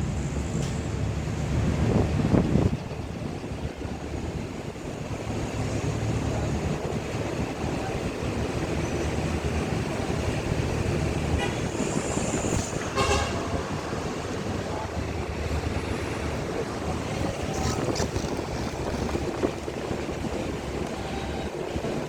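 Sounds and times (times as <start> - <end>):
ship engine rumbling: 0.0 - 22.0.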